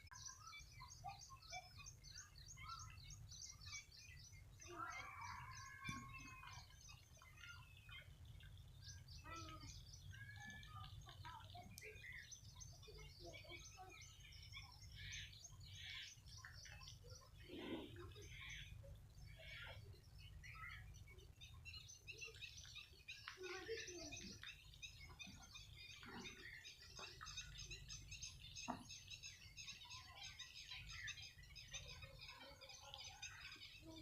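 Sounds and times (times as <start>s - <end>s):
wild birds chirping: 0.0s - 34.0s.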